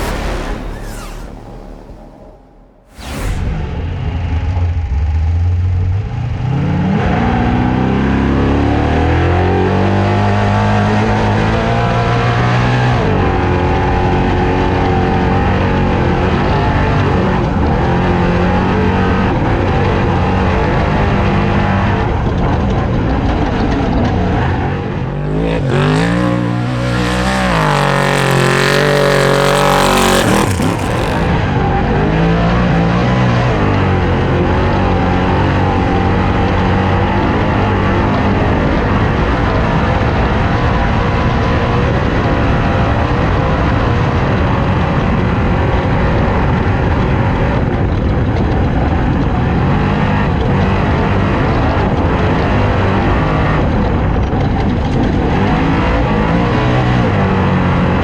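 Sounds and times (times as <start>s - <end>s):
loud rushing noise: 0.0s - 5.5s, 24.7s - 31.4s
race car engine at full throttle: 0.0s - 58.0s.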